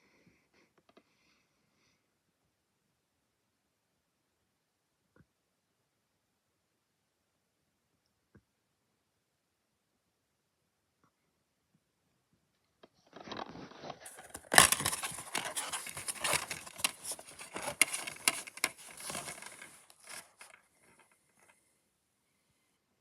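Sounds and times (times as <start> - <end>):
packaging rustling and crinkling: 14.0 - 21.2.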